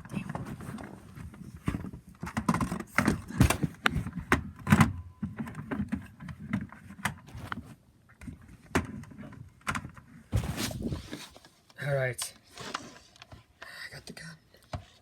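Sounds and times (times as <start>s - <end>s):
objects knocking and rustling: 0.0s - 11.7s.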